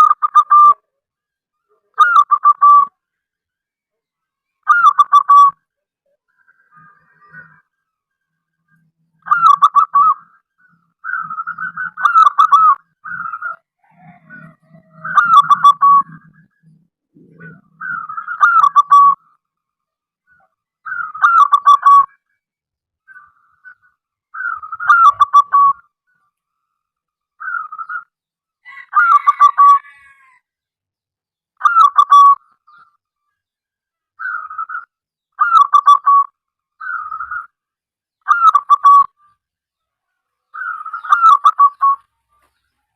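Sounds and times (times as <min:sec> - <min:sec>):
dove stuttering coos: 0:11.0 - 0:19.2.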